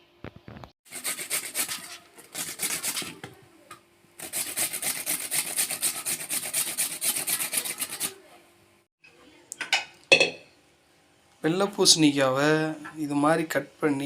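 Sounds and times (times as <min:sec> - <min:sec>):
knife scraping gourd: 0:00.9 - 0:03.3, 0:04.2 - 0:08.2.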